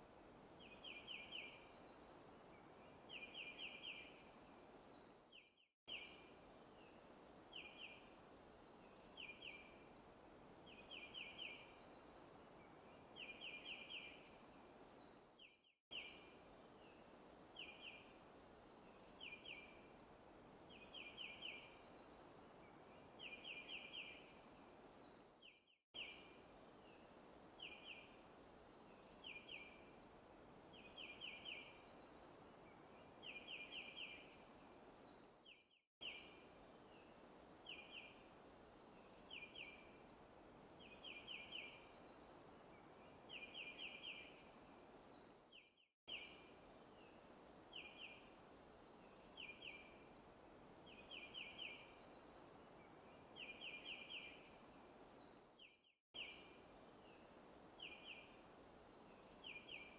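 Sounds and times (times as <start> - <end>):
soft steady hiss: 0.0 - 59.9.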